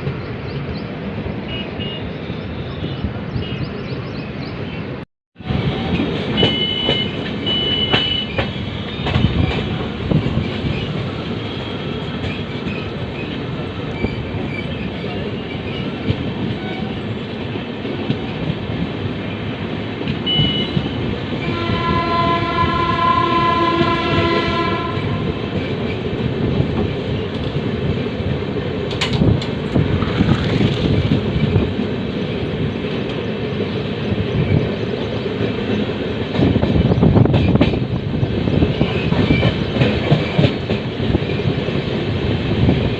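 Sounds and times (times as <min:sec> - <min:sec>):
train wheels rumbling on track: 0:00.0 - 0:42.9
train horn: 0:06.4 - 0:09.7, 0:20.2 - 0:25.6.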